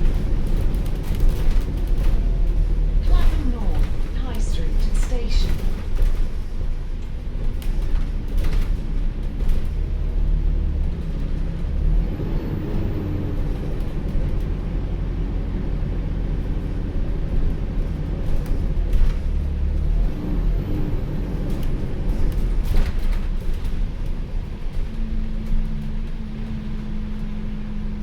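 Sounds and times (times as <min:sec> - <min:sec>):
bus interior low rumble: 0:00.0 - 0:28.0.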